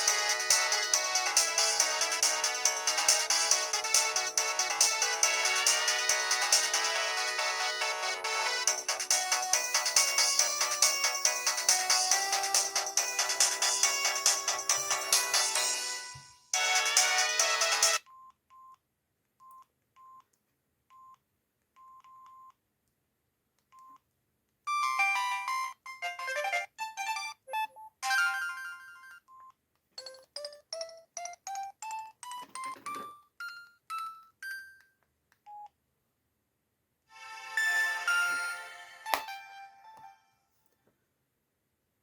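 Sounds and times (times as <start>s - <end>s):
mobile phone ringtone melody: 0.0s - 18.0s, 28.0s - 29.2s, 37.2s - 40.4s.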